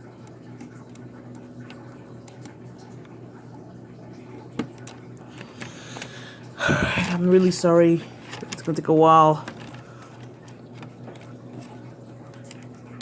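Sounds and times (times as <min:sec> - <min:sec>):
low steady hum: 0:00.0 - 0:13.0
loud rush of breath: 0:05.8 - 0:07.2.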